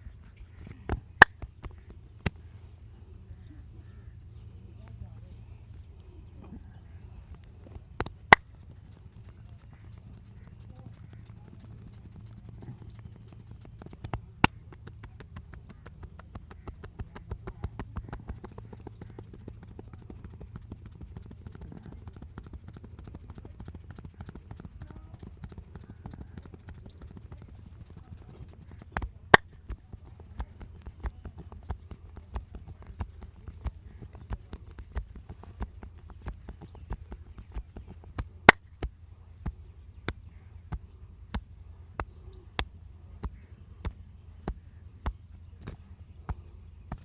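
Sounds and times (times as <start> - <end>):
hands tapping and slapping skin: 0.6 - 2.4, 8.0 - 24.7.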